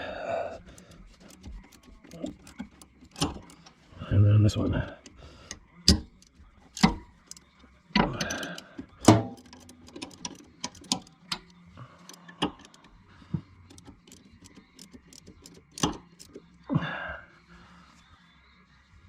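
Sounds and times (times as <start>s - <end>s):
wrench metal clicks and clanks: 0.6s - 16.6s
small ticks: 13.6s - 16.4s.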